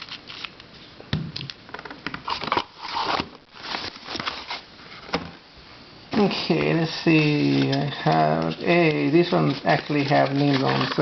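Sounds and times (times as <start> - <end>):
packaging rustling and crinkling: 2.2 - 5.2, 7.1 - 11.0.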